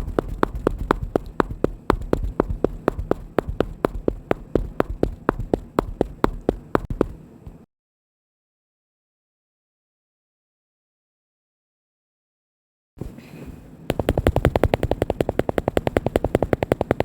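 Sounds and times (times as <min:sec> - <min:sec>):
running footsteps: 0:00.0 - 0:07.6, 0:13.9 - 0:17.0.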